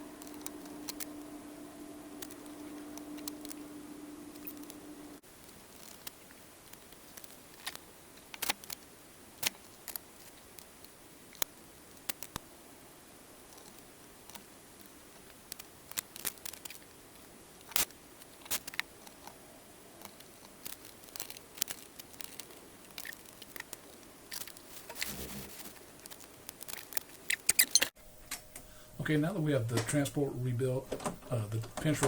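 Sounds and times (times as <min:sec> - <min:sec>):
short rustle: 0:24.6 - 0:25.8.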